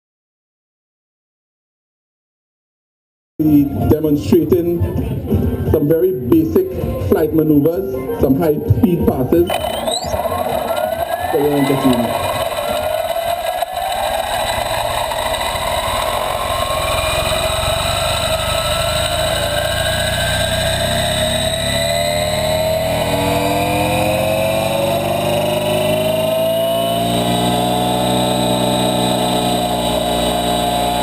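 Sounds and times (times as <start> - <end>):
helicopter rotor beat: 9.5 - 31.0
helicopter turbine whine: 9.5 - 31.0.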